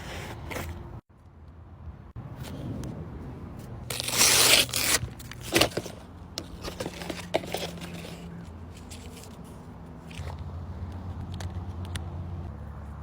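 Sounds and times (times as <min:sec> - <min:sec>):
paper tearing: 0:03.9 - 0:06.0
paper crinkling: 0:03.9 - 0:10.2.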